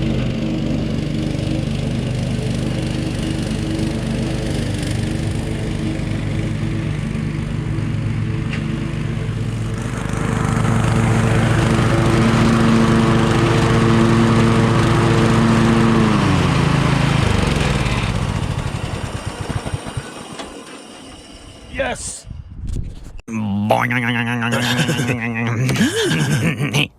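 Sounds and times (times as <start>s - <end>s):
riding lawn mower engine: 0.0s - 21.7s.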